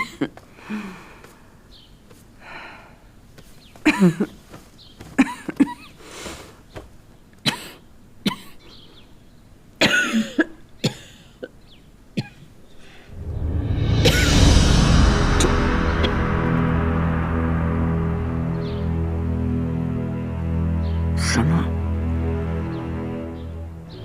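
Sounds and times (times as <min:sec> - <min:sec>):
woman breathing: 0:00.5 - 0:01.7, 0:02.4 - 0:03.3, 0:12.7 - 0:13.2
woman coughing: 0:03.8 - 0:04.4, 0:05.2 - 0:06.0, 0:07.4 - 0:08.6, 0:09.8 - 0:11.4.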